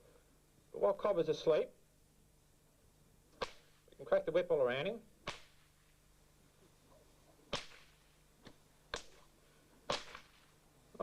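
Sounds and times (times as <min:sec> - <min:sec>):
whip cracking: 0:03.4 - 0:03.8, 0:05.2 - 0:05.7, 0:07.5 - 0:09.3, 0:09.9 - 0:10.5.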